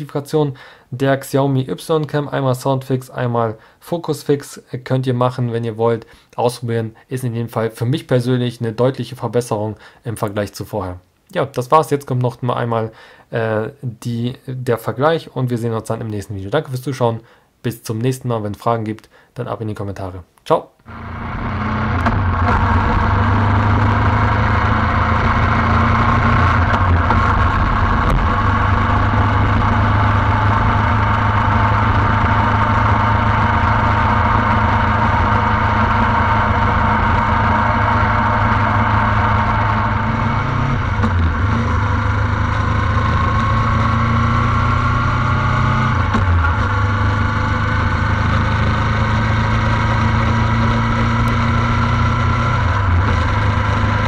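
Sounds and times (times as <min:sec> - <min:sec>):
vehicle engine running: 0:20.9 - 0:54.0.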